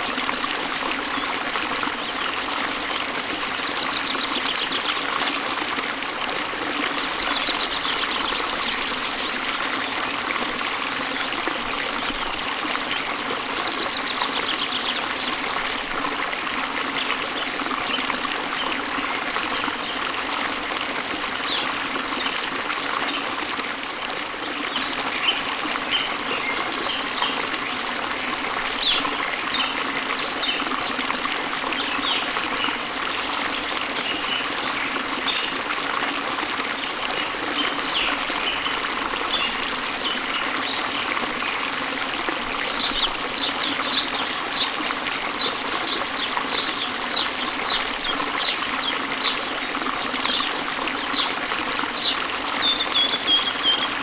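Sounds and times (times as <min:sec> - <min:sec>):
falling water rushing: 0:00.0 - 0:54.0
songbirds chirping: 0:42.7 - 0:54.0.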